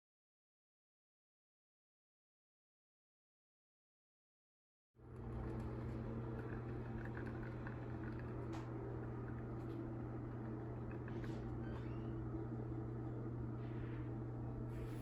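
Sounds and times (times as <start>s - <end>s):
low electrical hum: 5.0s - 15.0s.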